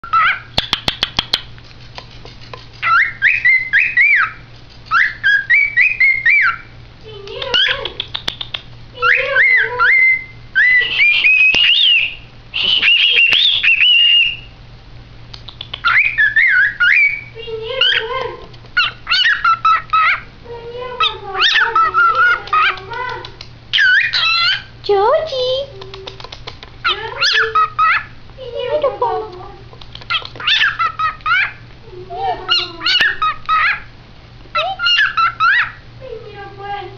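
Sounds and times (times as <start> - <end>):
rapid clicking chatter: 0.6 - 3.0, 7.0 - 8.7, 21.6 - 23.6, 25.4 - 27.2, 28.8 - 31.4
cockatiel whistling: 2.8 - 6.7, 9.0 - 14.6, 15.5 - 18.0, 23.7 - 24.7.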